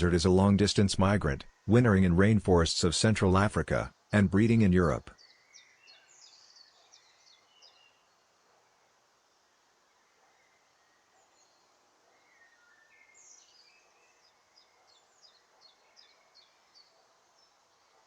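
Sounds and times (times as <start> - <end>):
faint small bird chirps: 5.2 - 8.6, 9.8 - 18.0.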